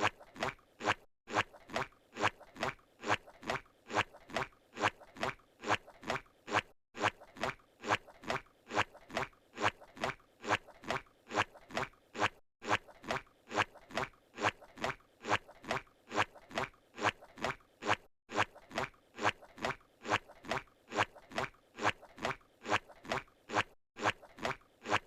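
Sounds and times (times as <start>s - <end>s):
cartoon footsteps: 0.0s - 25.0s.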